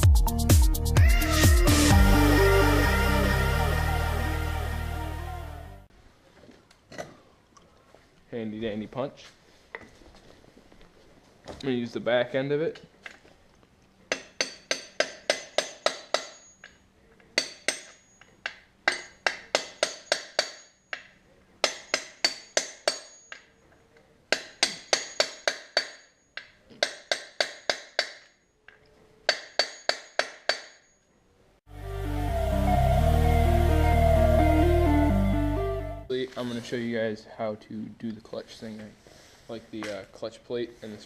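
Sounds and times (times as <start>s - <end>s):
background music: 0.0s - 5.9s, 31.7s - 36.1s
hammer tapping on steel punch: 17.4s - 23.5s.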